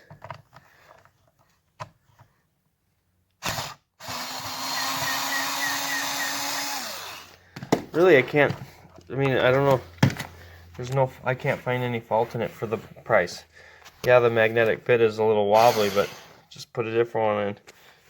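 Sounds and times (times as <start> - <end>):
cordless screwdriver motor running: 3.4 - 7.4, 15.6 - 16.2.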